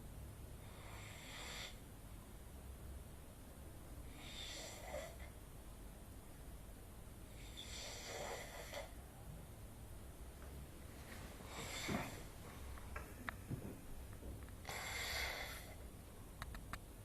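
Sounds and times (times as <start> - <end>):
man snoring: 7.5 - 8.9, 14.7 - 15.8.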